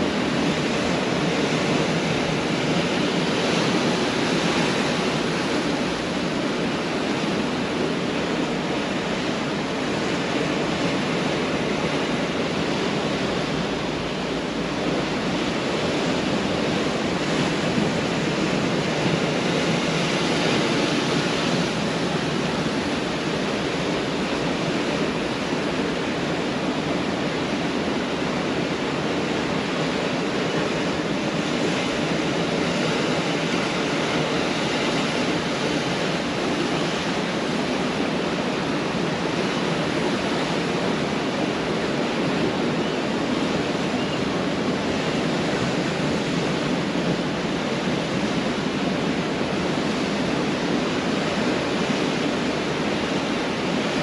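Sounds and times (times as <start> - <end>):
ocean waves breaking on beach: 0.0 - 54.0.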